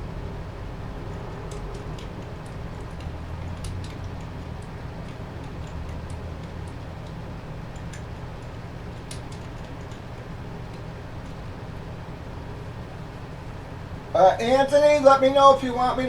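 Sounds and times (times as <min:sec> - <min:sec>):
steady low hum: 0:00.0 - 0:16.0
faint light clicks: 0:01.1 - 0:11.5.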